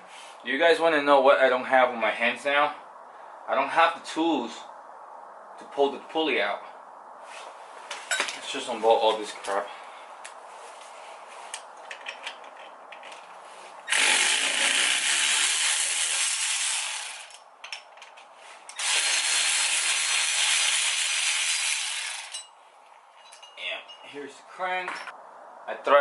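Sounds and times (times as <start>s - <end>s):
cordless power tool driving bolts: 13.9s - 17.4s, 18.7s - 22.4s.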